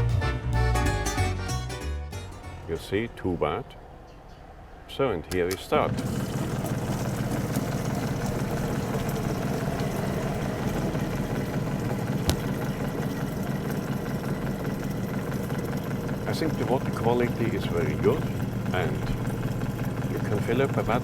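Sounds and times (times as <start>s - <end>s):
pump humming: 5.8s - 21.0s
water running into plastic bottle: 6.0s - 21.0s.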